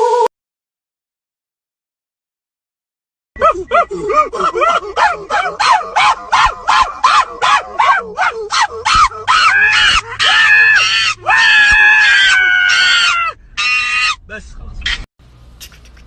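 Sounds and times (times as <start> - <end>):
dog howling: 3.4 - 14.2
dog yipping: 3.4 - 14.2.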